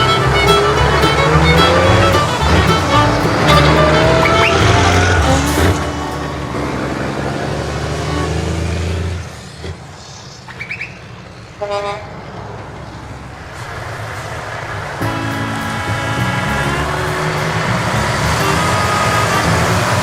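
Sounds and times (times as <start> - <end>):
short horn toot: 0.0 - 7.3, 18.4 - 20.0
vehicle engine running: 0.0 - 10.1, 12.8 - 20.0.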